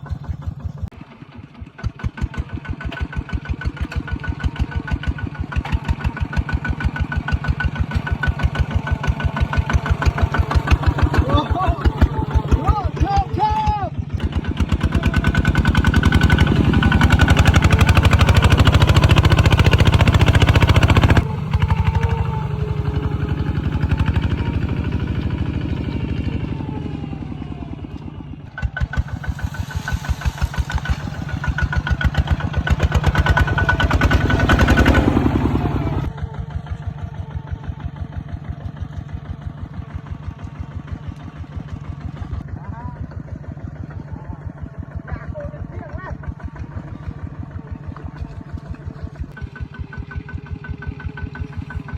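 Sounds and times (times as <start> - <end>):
diesel engine chugging: 0.0 - 51.9.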